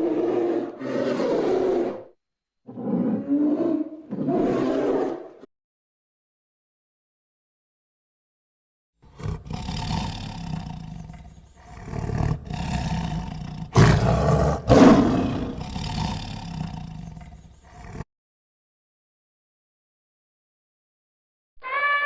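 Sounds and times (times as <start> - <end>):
big cat roaring: 0.0 - 2.1, 2.7 - 5.4, 9.1 - 18.1.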